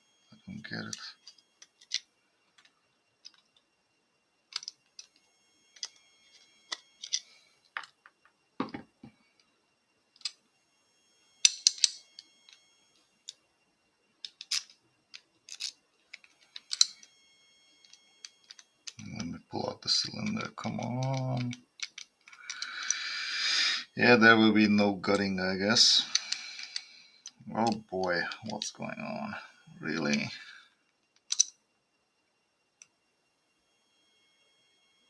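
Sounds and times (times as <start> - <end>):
padlock metal clicks and clinks: 4.5 - 5.1, 6.7 - 7.2, 11.4 - 12.1, 15.5 - 17.1, 20.8 - 23.0, 31.2 - 31.5.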